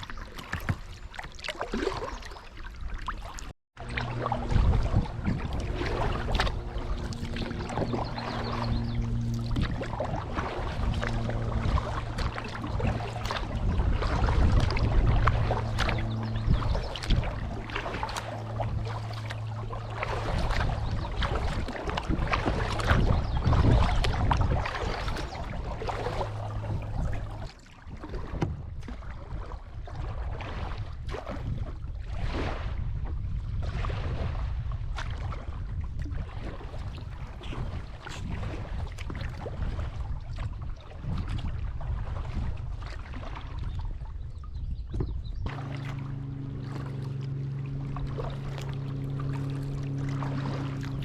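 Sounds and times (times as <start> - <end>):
river water rushing and splashing: 0.0 - 28.4, 45.5 - 51.0
boat knocking: 3.8 - 28.9, 44.8 - 51.0
low hum: 3.8 - 30.4, 41.6 - 51.0.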